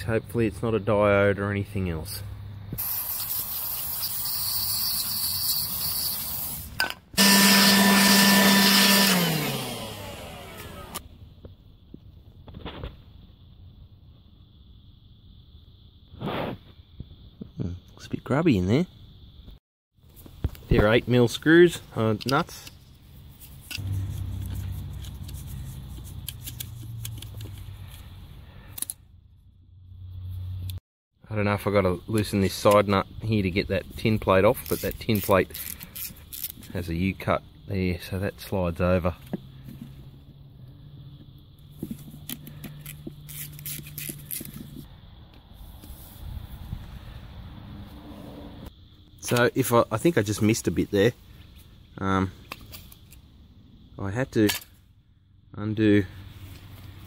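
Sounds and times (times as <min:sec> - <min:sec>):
aerosol spray hissing: 0:02.8 - 0:06.7
small electric power tool running: 0:07.2 - 0:11.1
small motor humming: 0:07.2 - 0:11.1
metallic clicks of tools: 0:54.4 - 0:54.8.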